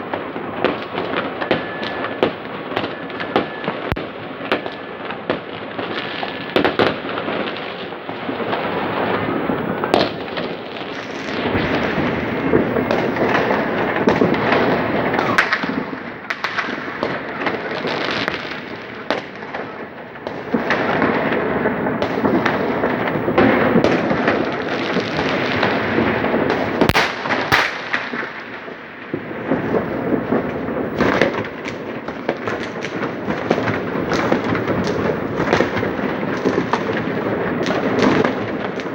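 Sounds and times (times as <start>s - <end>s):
fireworks crackle and rumble: 0.0s - 38.9s
sharp firework bangs: 0.0s - 38.9s.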